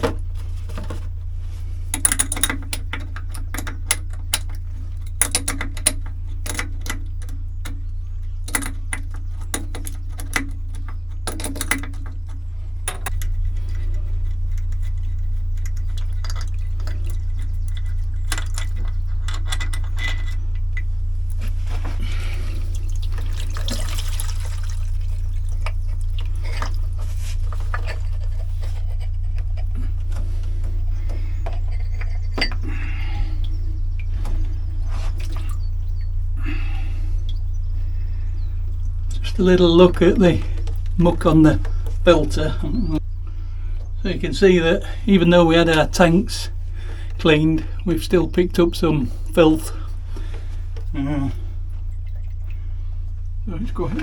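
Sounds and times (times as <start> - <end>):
steady low hum: 0.0 - 54.0
tools clicking and knocking on metal: 1.9 - 20.9
liquid running out: 22.0 - 27.0.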